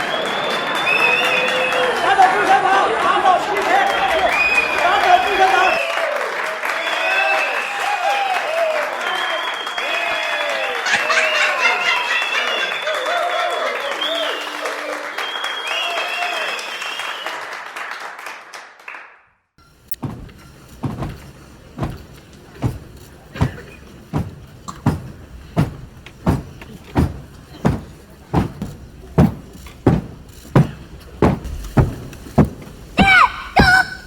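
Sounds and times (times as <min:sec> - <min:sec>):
applause: 0:00.0 - 0:19.3
dull thumps: 0:19.6 - 0:34.0.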